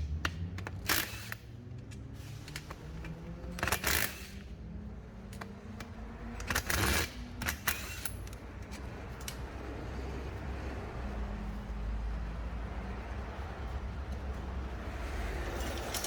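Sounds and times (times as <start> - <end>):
metallic clicks of hand tools: 0.1 - 4.5, 5.2 - 9.5.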